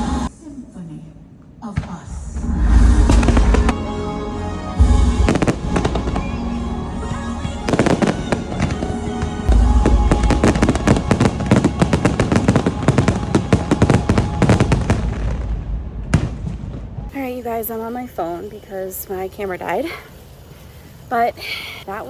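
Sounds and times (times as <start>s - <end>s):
firework booms: 1.8s - 3.8s, 4.8s - 17.2s
fireworks crackling: 1.8s - 4.0s, 4.7s - 22.0s
music soundtrack: 2.4s - 17.1s.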